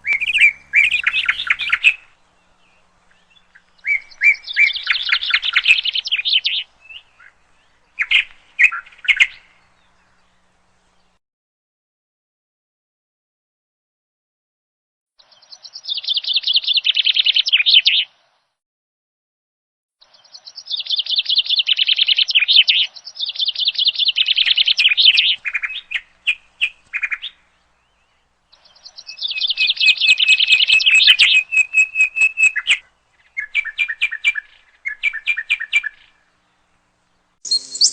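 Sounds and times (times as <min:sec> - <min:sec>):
songbird trilling and chirping: 0:00.0 - 0:11.2, 0:20.0 - 0:36.7, 0:37.4 - 0:37.9.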